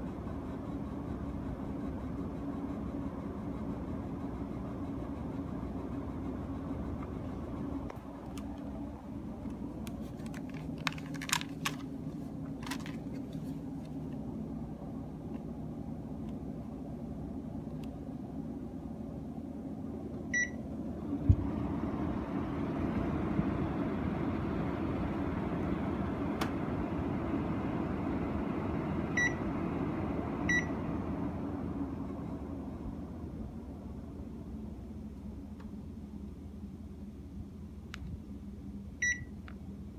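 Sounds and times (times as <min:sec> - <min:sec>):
air conditioner humming: 0:00.0 - 0:39.9
air conditioner beep: 0:20.3 - 0:20.6, 0:27.5 - 0:31.2, 0:39.0 - 0:39.4.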